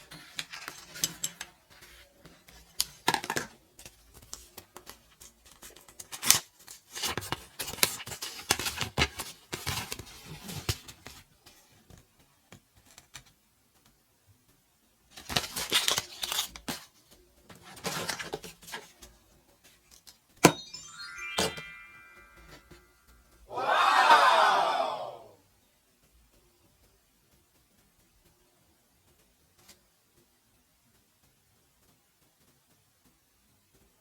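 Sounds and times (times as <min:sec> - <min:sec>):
wrappers tearing and crinkling: 0:15.3 - 0:16.7.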